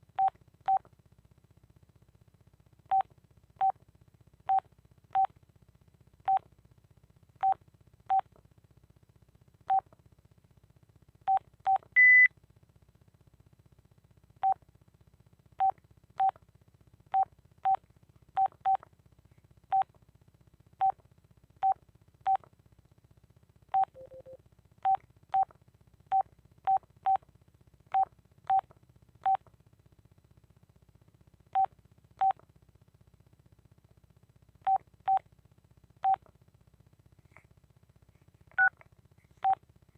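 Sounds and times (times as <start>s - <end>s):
phone keypad beeps: 12.0s - 12.3s, 23.8s - 24.4s.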